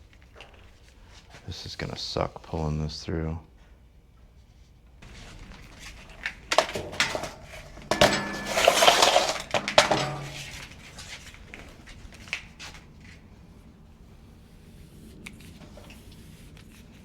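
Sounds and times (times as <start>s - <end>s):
wires rustling and scraping in sleeving: 4.4s - 17.0s.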